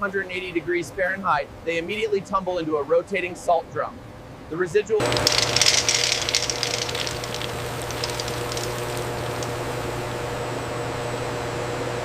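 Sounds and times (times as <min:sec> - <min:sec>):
peanuts rattling in drum: 0:05.0 - 0:10.0.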